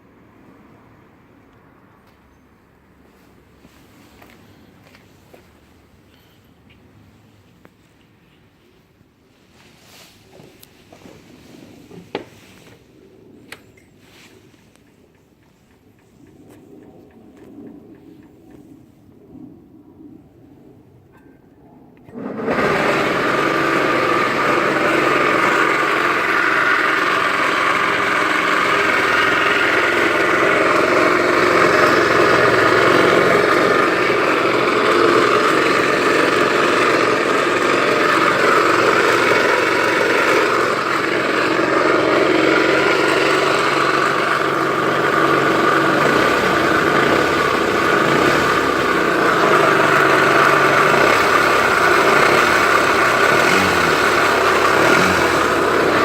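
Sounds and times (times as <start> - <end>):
abnormal engine noise: 21.6 - 56.0
scooter engine running: 22.1 - 56.0.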